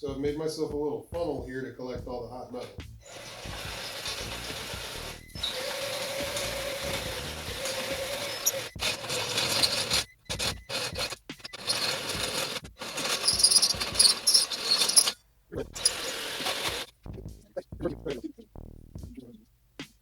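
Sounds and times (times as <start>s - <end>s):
power tool grinding metal: 3.0s - 16.9s.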